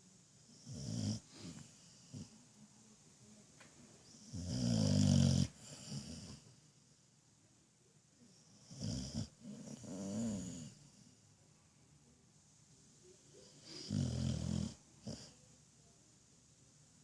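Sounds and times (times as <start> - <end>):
dog snoring: 0.5 - 2.3, 4.1 - 6.5, 8.5 - 11.0, 13.4 - 15.4.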